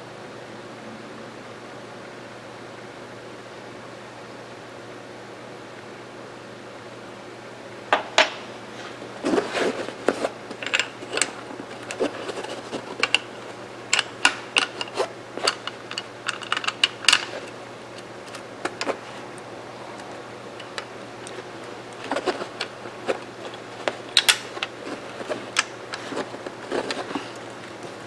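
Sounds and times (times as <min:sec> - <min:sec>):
metal clicks and knocks of rifle parts: 0:09.3 - 0:19.0, 0:20.6 - 0:28.0.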